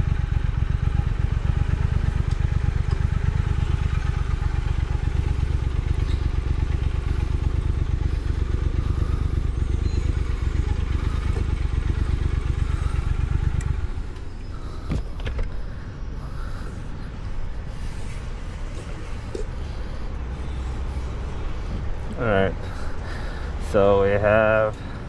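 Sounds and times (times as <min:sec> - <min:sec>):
motorcycle engine running: 0:00.0 - 0:15.4.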